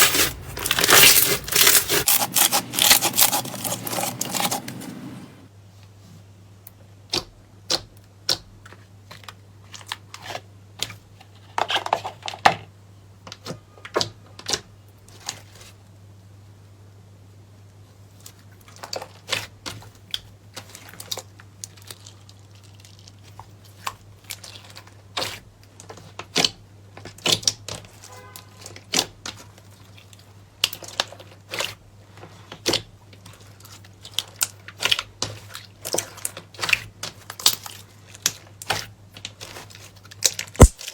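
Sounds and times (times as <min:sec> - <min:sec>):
slime popping and crackling: 0:00.0 - 0:04.6, 0:40.2 - 0:40.9.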